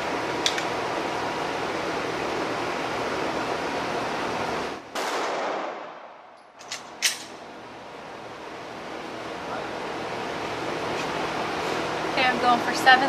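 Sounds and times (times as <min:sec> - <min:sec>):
ventilation hiss: 0:00.0 - 0:13.0
muffled pistol shots: 0:04.9 - 0:06.4.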